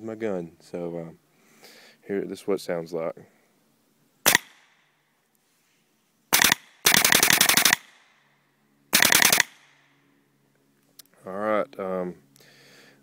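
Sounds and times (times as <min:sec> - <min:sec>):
paintball marker rapid shots: 0:04.3 - 0:04.6, 0:06.3 - 0:08.0, 0:08.9 - 0:09.8.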